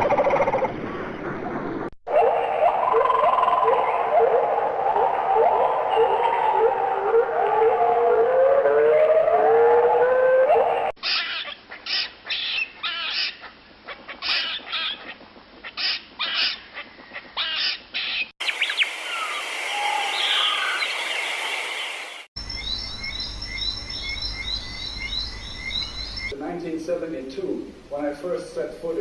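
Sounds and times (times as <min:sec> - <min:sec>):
birds calling: 0:10.7 - 0:26.4
fast rhythmic bird chirping: 0:22.4 - 0:26.3.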